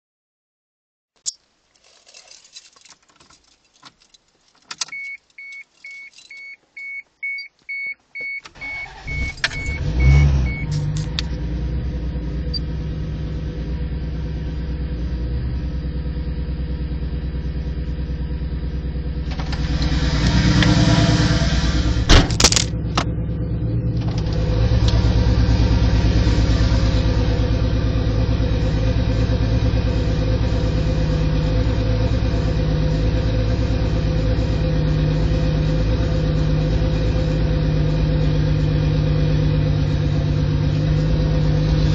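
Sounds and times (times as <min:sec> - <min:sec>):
keys jangling: 0:01.8 - 0:06.5
car engine starting and idling: 0:02.5 - 0:41.9
car warning chime beeping: 0:04.8 - 0:11.0.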